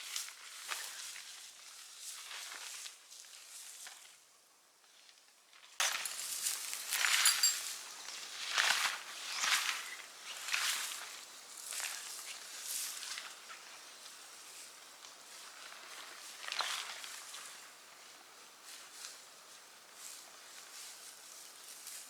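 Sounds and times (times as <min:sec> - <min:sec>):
light clinks: 0:05.8 - 0:07.9.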